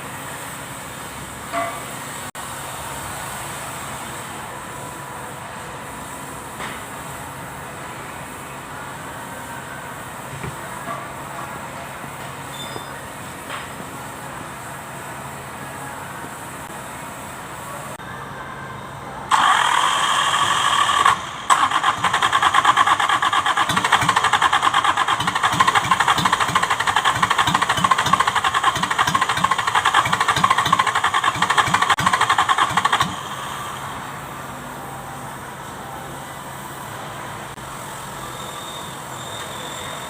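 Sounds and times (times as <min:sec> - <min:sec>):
diesel engine cranking: 0:19.3 - 0:34.1.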